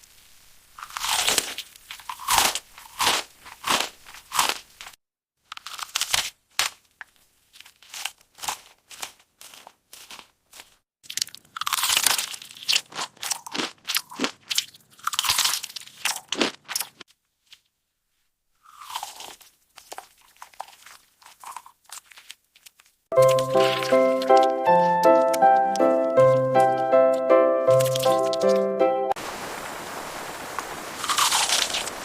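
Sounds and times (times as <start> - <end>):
baby crunching fruit: 0.8 - 17.1, 18.6 - 26.8, 27.7 - 28.6, 31.0 - 32.0.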